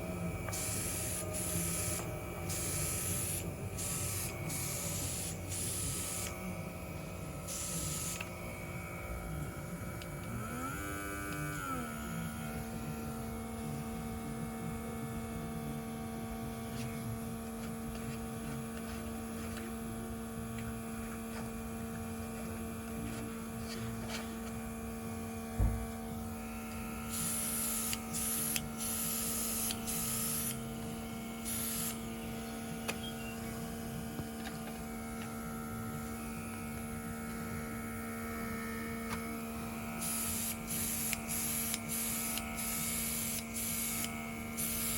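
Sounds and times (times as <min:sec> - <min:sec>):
compressor motor humming: 0:00.0 - 0:44.9
airbrush spraying hisses: 0:00.6 - 0:06.3, 0:07.5 - 0:08.2, 0:27.1 - 0:30.6, 0:31.5 - 0:32.0, 0:40.0 - 0:44.9
thump: 0:25.6 - 0:25.9.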